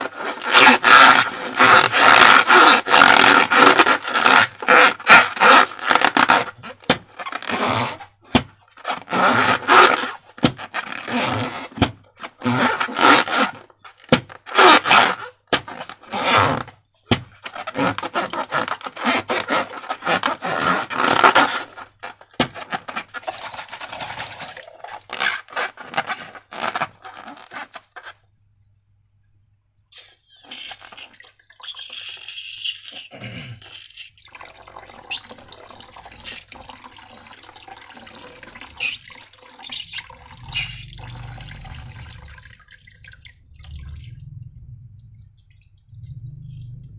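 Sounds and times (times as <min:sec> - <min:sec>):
rubbing and scraping of balloons: 0:00.0 - 0:28.2, 0:34.9 - 0:42.6.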